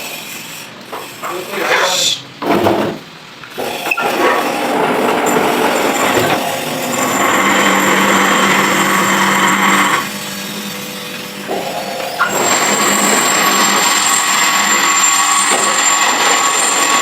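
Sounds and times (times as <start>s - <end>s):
lathe tool scraping workpiece: 3.6s - 17.0s.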